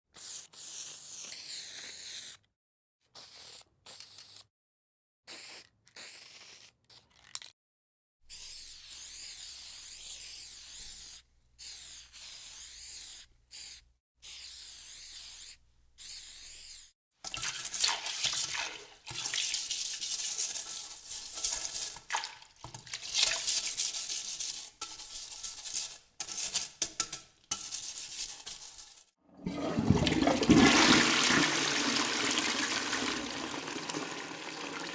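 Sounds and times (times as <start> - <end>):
uneven water-like noise: 29.3 - 34.9.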